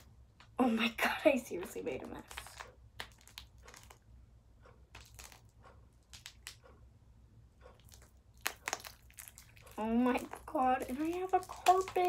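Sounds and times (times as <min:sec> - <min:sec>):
sticky slime crackles: 0:02.0 - 0:04.1, 0:04.9 - 0:06.6, 0:07.8 - 0:12.0.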